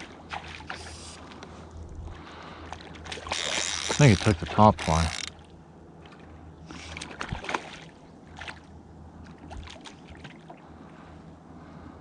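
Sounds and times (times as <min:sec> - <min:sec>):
faint flowing river water: 0:00.0 - 0:12.0
fishing reel clicking: 0:03.3 - 0:05.3.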